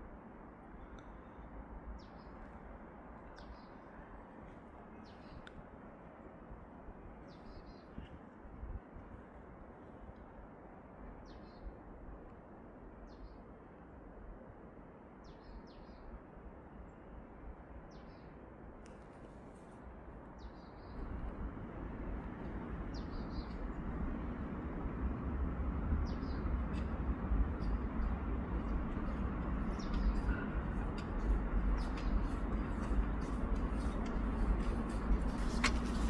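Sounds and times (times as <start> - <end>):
outdoor background noise: 0.0 - 36.0
small birds chirping: 22.9 - 23.7, 27.5 - 36.0.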